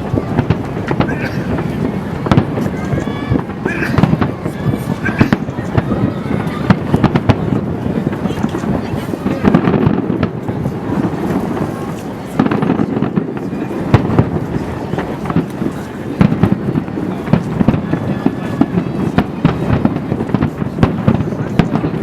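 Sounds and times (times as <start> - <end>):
continuous rumble: 0.0 - 22.0
fireworks bangs and crackles: 0.0 - 22.0.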